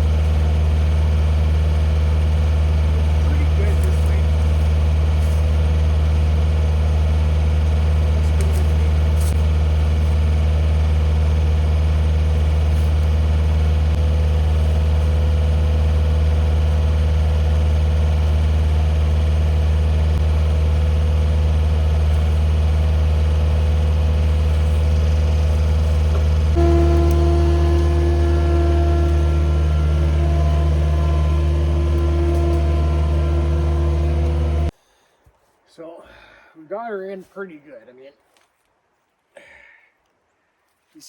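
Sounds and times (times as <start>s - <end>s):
engine idling: 0.0s - 34.7s
high steady whine: 20.2s - 34.7s.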